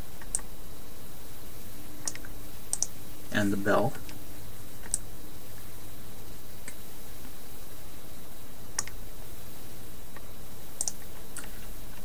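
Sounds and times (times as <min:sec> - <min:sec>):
background hum and hiss: 0:00.0 - 0:12.0
computer mouse clicks: 0:00.2 - 0:00.5, 0:02.0 - 0:02.9, 0:04.8 - 0:05.0, 0:08.8 - 0:09.0, 0:10.8 - 0:11.7.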